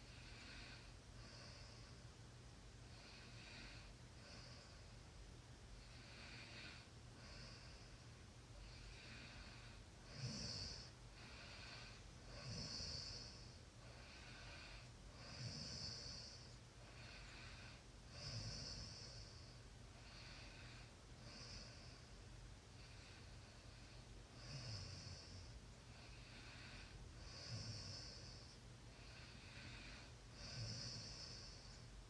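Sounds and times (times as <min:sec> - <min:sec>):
person snoring: 0:08.7 - 0:22.0, 0:22.9 - 0:31.8.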